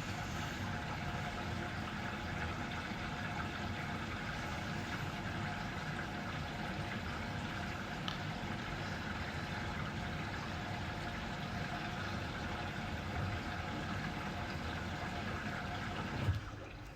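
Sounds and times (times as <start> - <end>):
washing machine motor hum: 0.0 - 16.9.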